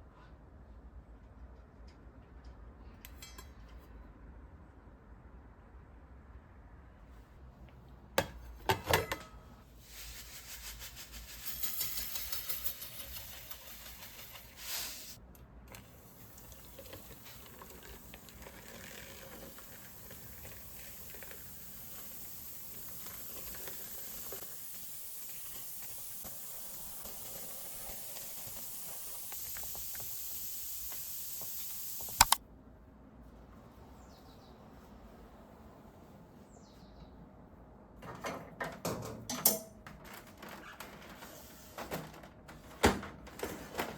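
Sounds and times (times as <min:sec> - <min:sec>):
steady hiss: 0:09.8 - 0:15.2, 0:15.8 - 0:32.4
sharp click: 0:32.0 - 0:32.4.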